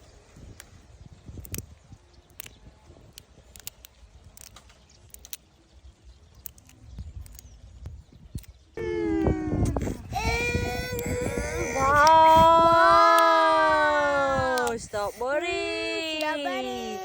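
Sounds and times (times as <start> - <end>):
low rumble: 8.8 - 10.4.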